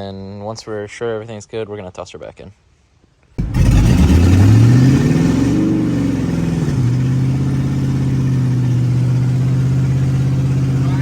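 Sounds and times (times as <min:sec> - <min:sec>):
car engine revving and idling: 0:03.4 - 0:11.0.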